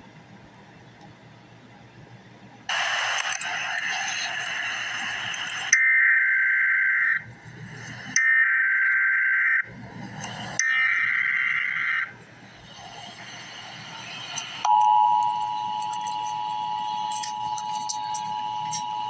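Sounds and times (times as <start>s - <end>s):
harsh hissing burst: 2.7s - 5.8s
raspy two-tone data bursts: 2.7s - 19.0s.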